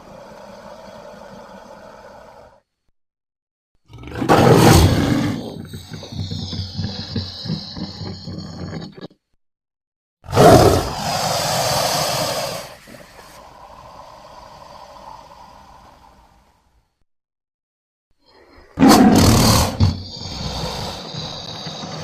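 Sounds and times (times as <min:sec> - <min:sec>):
loud rough animal roar: 0:03.8 - 0:09.1, 0:10.3 - 0:12.7, 0:18.8 - 0:22.0
animal call: 0:18.3 - 0:22.0.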